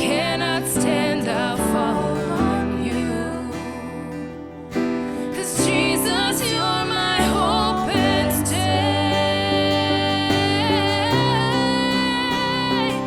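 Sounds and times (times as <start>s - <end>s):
slow worship music with guitar: 0.0s - 13.0s.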